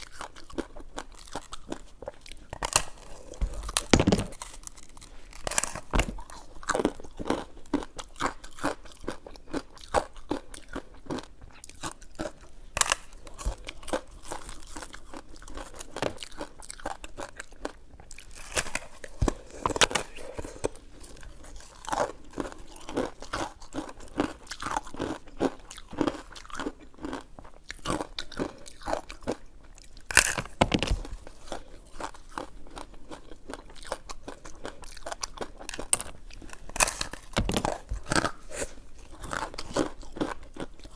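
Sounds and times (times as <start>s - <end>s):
chewing and biting sticky food: 0.0s - 40.9s.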